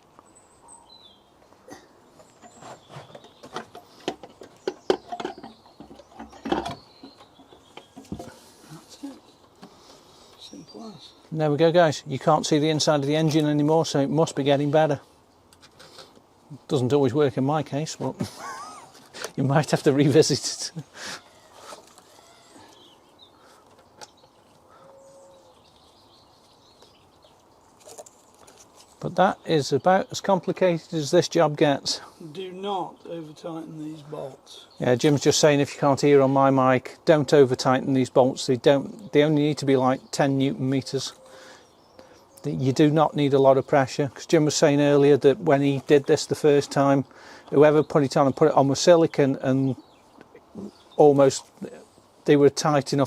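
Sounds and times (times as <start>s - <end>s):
faint birdsong: 0.0s - 53.0s
engine cover clicks and knocks: 3.2s - 8.3s.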